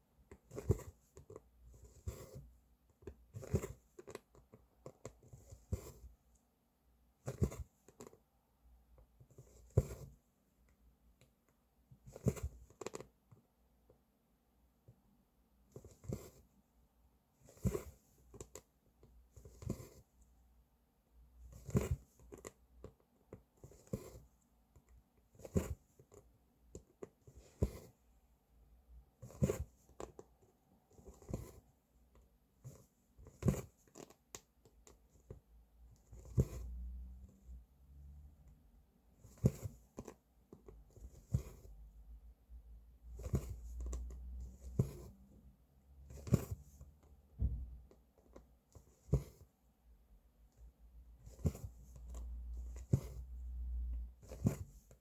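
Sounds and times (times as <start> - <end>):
needle poking through fabric: 36.0 - 37.0, 39.2 - 41.8, 43.1 - 45.3, 46.1 - 46.8, 48.8 - 49.5, 51.2 - 53.6.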